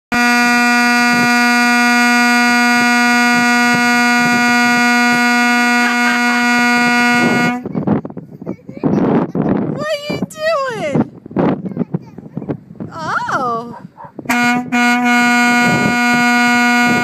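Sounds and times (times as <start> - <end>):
truck horn blast: 0.1 - 7.7, 14.3 - 17.0.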